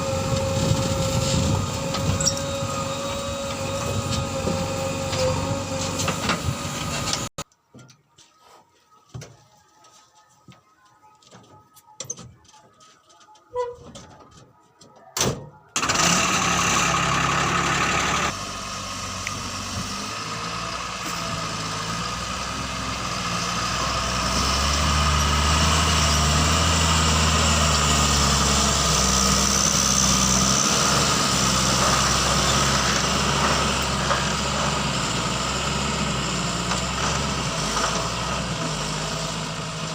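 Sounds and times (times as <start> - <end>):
heavy diesel engine running: 0.0 - 7.3, 15.8 - 39.9.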